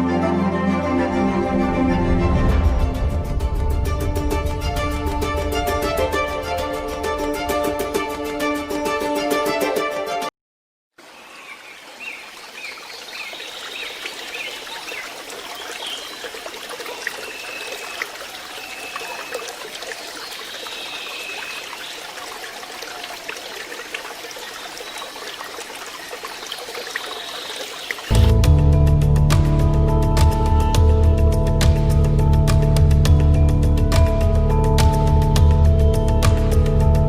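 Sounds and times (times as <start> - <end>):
music: 0.0 - 10.3, 28.1 - 37.0
mountain stream trickling: 11.0 - 28.4.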